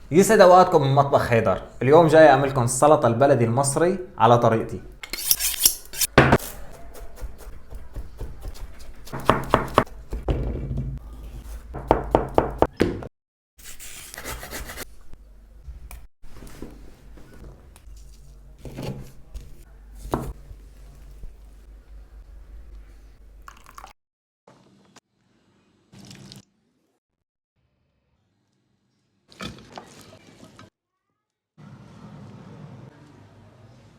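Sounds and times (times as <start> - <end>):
knife chopping on cutting board: 5.9 - 10.3, 11.4 - 12.7.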